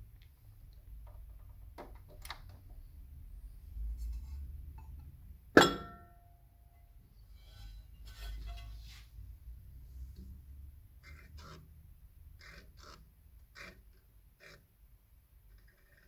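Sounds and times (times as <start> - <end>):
loud clink with ringing: 5.6 - 6.4.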